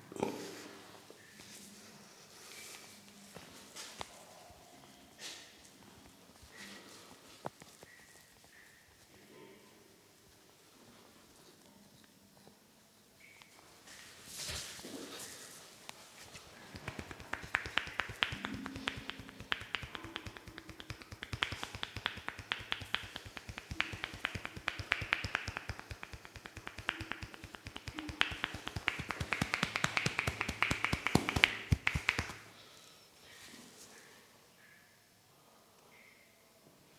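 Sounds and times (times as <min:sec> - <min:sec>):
hands tapping on head: 0:16.6 - 0:32.5.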